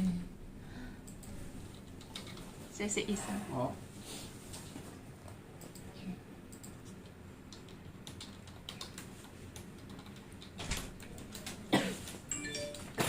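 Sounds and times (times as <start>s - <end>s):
computer keyboard typing: 1.1s - 2.5s, 6.5s - 11.6s.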